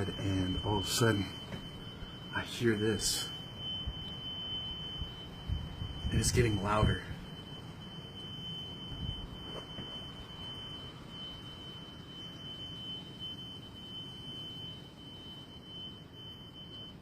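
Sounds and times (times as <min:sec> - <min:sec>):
low rumbling noise: 0:00.0 - 0:11.1
steady high-pitched whine: 0:00.0 - 0:17.0.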